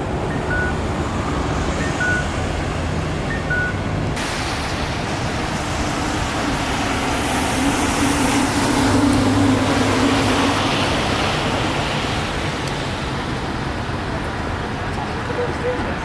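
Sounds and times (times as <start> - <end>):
traffic noise: 0.0 - 16.0
vehicle engine hum: 0.0 - 16.0
crossing signal chirp: 0.2 - 2.4, 3.2 - 3.9.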